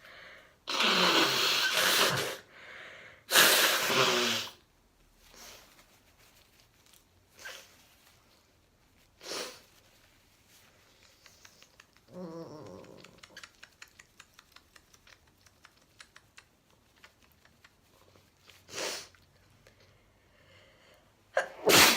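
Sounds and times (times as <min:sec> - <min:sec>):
person sniffing: 0:00.0 - 0:04.6, 0:09.2 - 0:09.7, 0:18.6 - 0:19.2, 0:20.4 - 0:21.9
faint irregular clicks and taps: 0:10.7 - 0:18.2.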